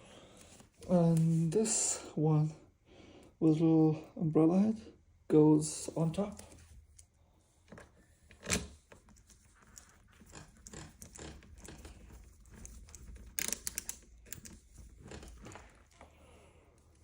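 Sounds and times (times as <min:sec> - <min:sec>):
lock parts clicking and scraping: 0:06.3 - 0:16.0.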